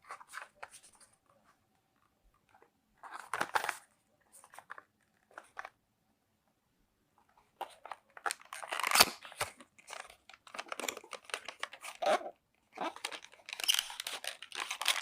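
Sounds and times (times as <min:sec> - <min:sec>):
packaging crinkling and rustling: 0:03.0 - 0:05.8, 0:07.6 - 0:15.0.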